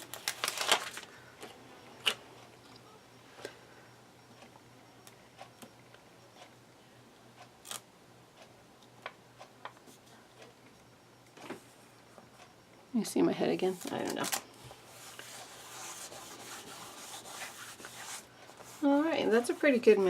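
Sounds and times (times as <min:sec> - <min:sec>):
backing paper crinkle: 0:00.0 - 0:02.2, 0:13.7 - 0:20.0.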